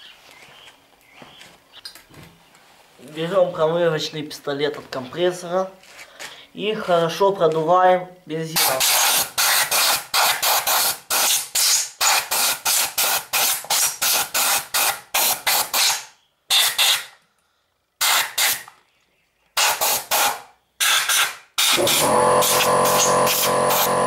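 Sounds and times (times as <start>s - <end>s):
compressed-air gun hissing: 8.6s - 17.1s, 18.0s - 18.7s, 19.6s - 22.0s.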